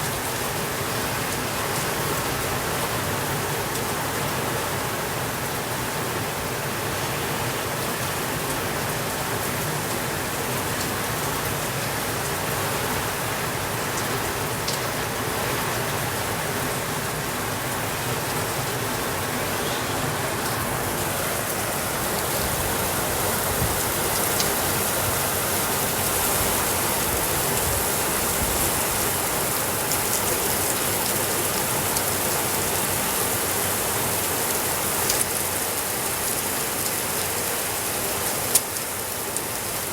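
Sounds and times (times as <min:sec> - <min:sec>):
steady rain hiss: 0:00.0 - 0:39.9
rain drop ticks: 0:24.1 - 0:24.7, 0:34.6 - 0:35.6.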